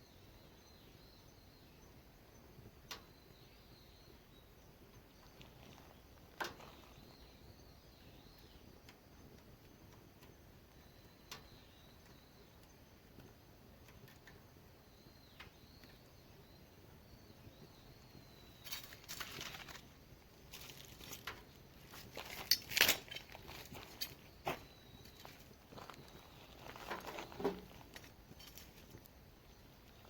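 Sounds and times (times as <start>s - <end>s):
bird chirps: 14.0s - 19.9s, 23.5s - 30.0s
rustling scraping noise: 20.5s - 29.0s.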